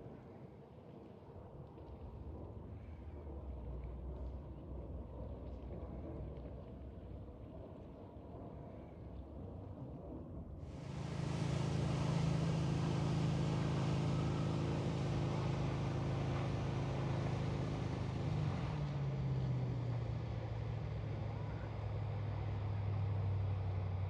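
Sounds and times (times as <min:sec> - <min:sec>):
engine humming: 0:10.7 - 0:24.0.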